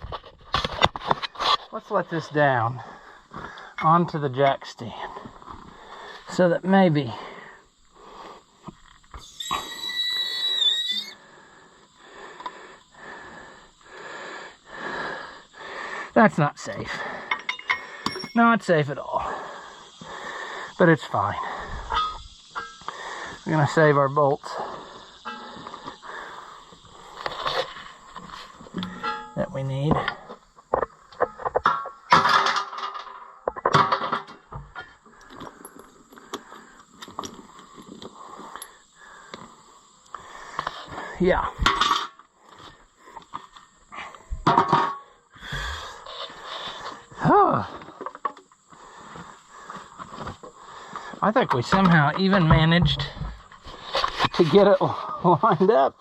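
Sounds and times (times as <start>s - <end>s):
jack whistling squeal: 9.1s - 11.2s
metal tools clanking and rattling: 17.3s - 18.6s, 21.8s - 22.9s, 25.2s - 25.7s, 28.8s - 30.2s, 31.2s - 34.9s, 41.6s - 42.2s
breathy hisses of jack: 19.2s - 20.8s, 24.5s - 29.0s, 35.2s - 41.6s, 45.4s - 47.1s.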